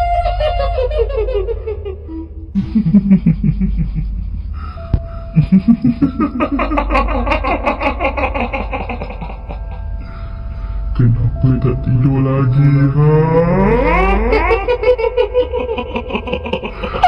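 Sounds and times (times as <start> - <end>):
low drone: 0.0 - 17.0
woman cackling: 0.7 - 4.3, 5.4 - 9.9, 13.6 - 17.0.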